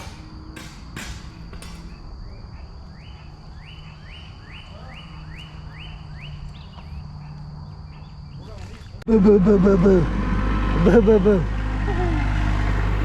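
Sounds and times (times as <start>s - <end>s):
songbird whistling: 1.8s - 8.4s.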